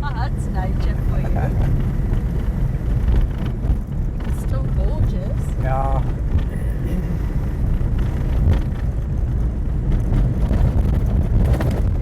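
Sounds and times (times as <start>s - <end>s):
vehicle driving on wet gravel: 0.0s - 12.0s.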